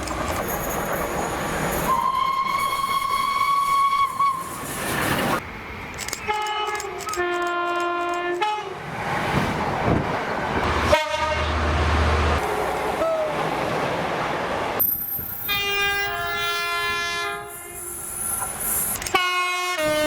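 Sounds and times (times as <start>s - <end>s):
rolling train noise: 0.0s - 20.0s
single train horn note: 10.7s - 11.7s, 15.5s - 18.1s, 19.1s - 20.0s.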